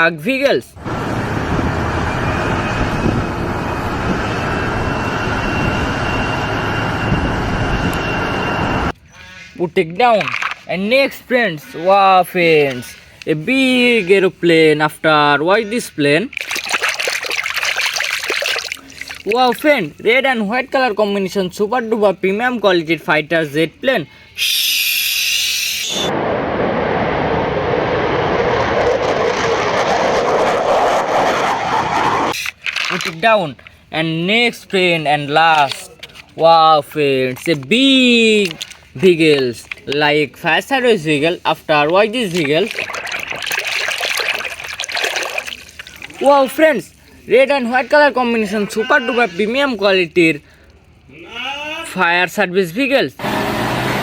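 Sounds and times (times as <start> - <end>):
vehicle engine drone: 0.8 - 9.0, 26.1 - 32.4, 53.2 - 54.0
faint high whine: 0.9 - 9.0.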